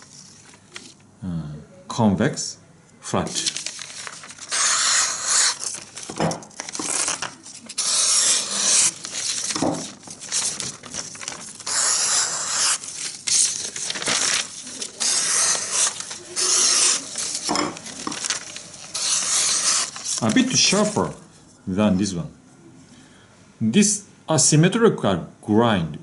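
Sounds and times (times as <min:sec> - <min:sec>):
knife slicing through paper: 0:03.4 - 0:21.0.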